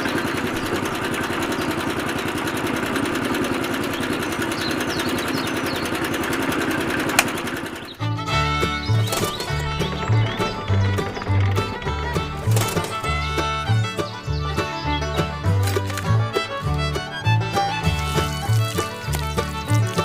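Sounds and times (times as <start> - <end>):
sharp click: 7.1 - 7.4.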